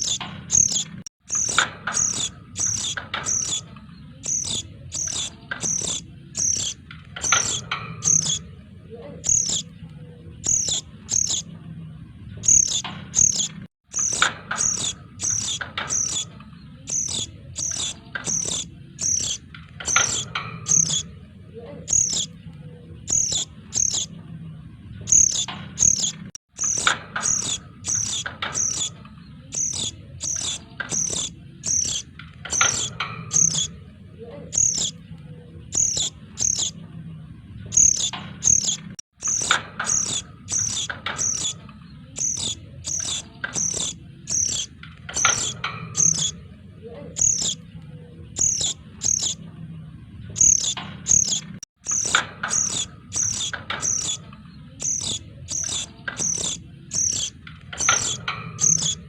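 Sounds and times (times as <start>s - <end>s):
bird chicks chirping: 0.0s - 8.5s, 9.2s - 9.7s, 10.4s - 11.5s, 12.4s - 21.1s, 21.8s - 22.4s, 23.1s - 24.1s, 25.1s - 33.8s, 34.5s - 35.0s, 35.7s - 36.8s, 37.7s - 46.4s, 47.1s - 47.6s, 48.4s - 49.4s, 50.4s - 59.0s.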